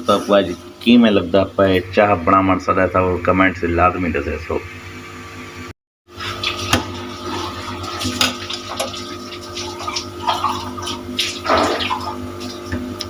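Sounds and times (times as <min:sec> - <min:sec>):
steady hum: 0:00.0 - 0:13.0
liquid pouring: 0:06.2 - 0:12.7.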